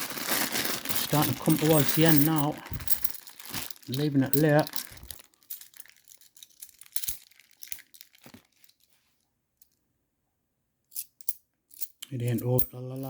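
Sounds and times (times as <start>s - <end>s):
plastic bag tearing and crinkling: 0.0s - 8.9s.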